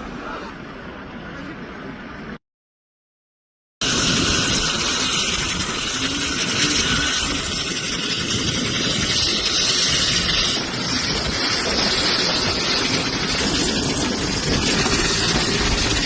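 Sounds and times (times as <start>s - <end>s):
engine running loudly: 3.8s - 16.0s.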